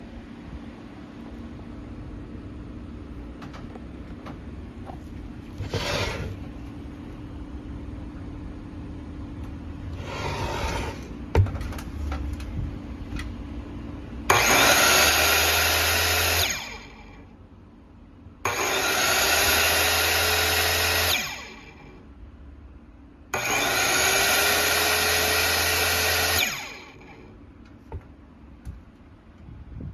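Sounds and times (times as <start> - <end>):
circular saw motor whining: 9.9 - 11.2, 14.2 - 17.3, 18.4 - 22.1, 23.3 - 27.4.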